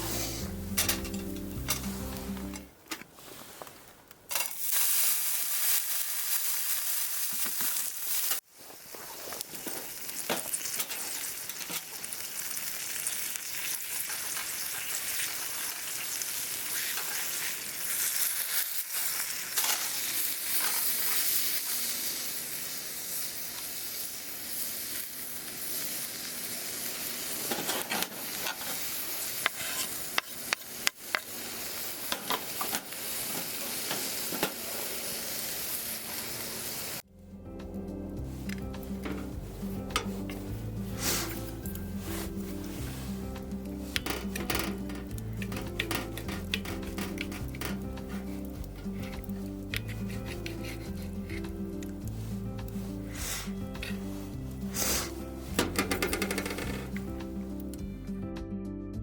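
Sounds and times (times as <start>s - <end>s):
steak sizzling: 0.0s - 2.7s, 4.3s - 8.4s, 9.1s - 37.0s, 38.2s - 57.8s
fire pops and crackles: 43.4s - 50.6s.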